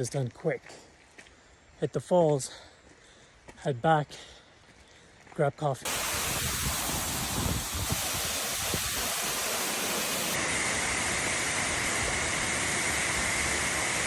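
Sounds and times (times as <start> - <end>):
waterfall rushing: 5.9 - 14.0.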